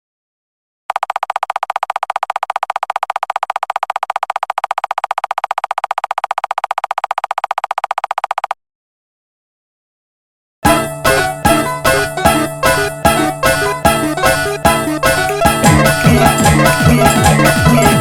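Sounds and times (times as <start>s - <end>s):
rapid electronic pulsing tone: 10.7s - 18.0s.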